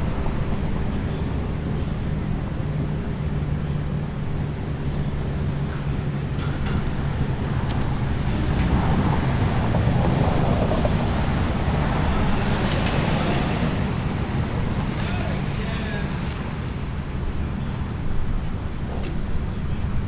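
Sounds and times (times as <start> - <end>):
road traffic noise: 0.0 - 20.0
wind on microphone: 6.7 - 15.5.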